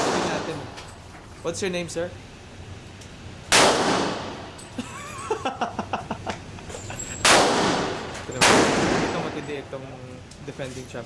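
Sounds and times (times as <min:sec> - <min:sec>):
gunshots with ringing tail: 0:00.0 - 0:00.6, 0:03.5 - 0:04.5, 0:07.2 - 0:09.6.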